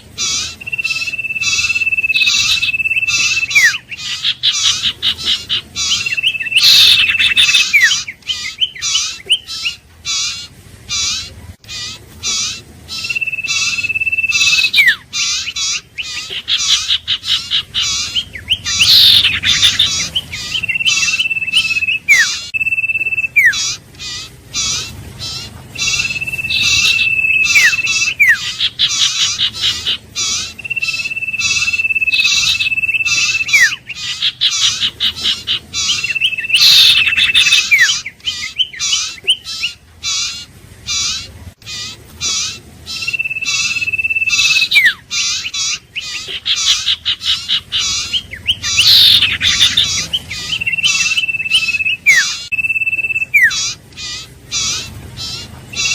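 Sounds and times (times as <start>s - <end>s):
rapid bird chirping: 0.0s - 55.9s
bird whistle dropping in pitch: 12.9s - 15.0s, 30.6s - 33.8s, 42.9s - 45.0s, 48.0s - 53.6s.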